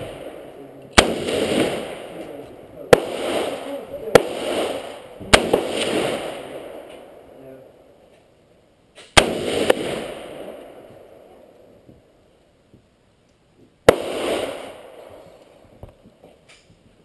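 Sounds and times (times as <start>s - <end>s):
rifle shots with echo: 0.0s - 7.4s, 9.0s - 11.5s, 13.8s - 15.6s.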